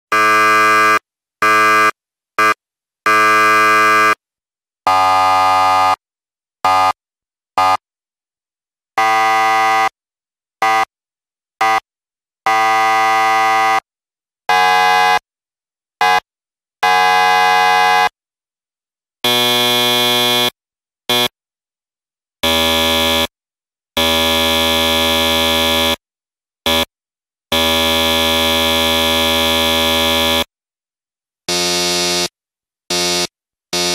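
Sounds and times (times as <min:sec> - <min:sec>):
electric buzzers: 0:19.2 - 0:21.4, 0:22.4 - 0:23.3, 0:31.5 - 0:33.9.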